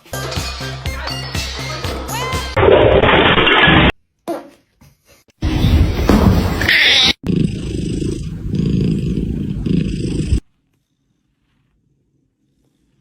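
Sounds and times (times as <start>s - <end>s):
cat purr-like rumble: 7.2s - 13.0s.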